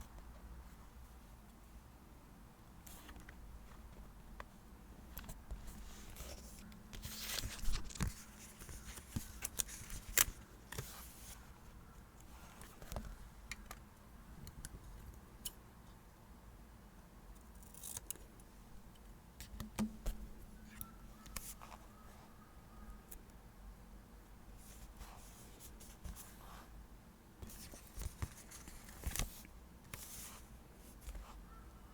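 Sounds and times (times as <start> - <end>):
paper rustling: 5.7 - 11.4.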